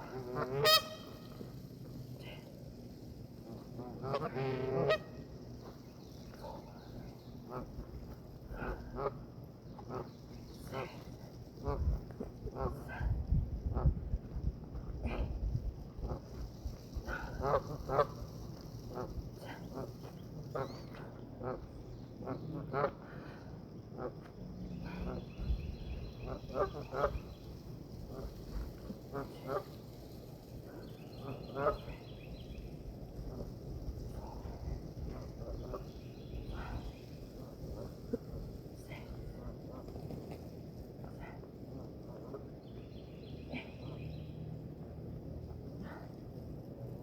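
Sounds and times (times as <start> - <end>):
ducks quacking: 0.0 - 1.4, 3.5 - 5.2, 17.1 - 18.2, 18.9 - 23.2, 26.2 - 27.4, 31.2 - 32.1.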